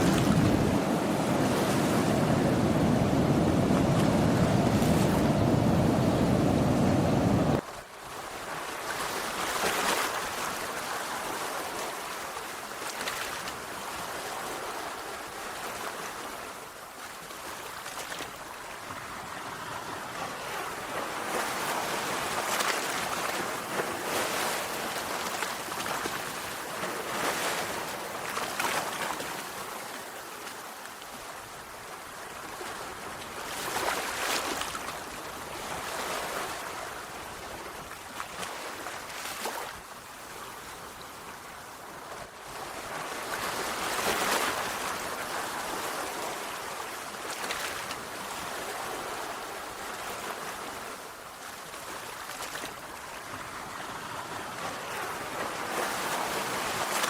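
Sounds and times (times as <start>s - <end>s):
sea waves washing onto shore: 0.0s - 16.6s.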